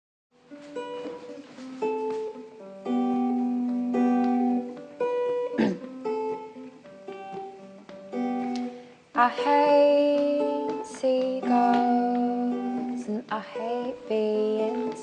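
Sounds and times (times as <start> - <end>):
acoustic guitar plucking: 0.4 - 15.0
guitar slide: 0.8 - 13.2.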